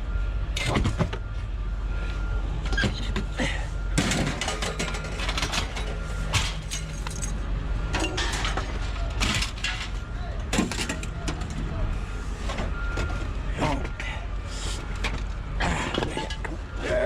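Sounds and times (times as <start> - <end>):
scrap metal clanking: 7.9 - 11.1.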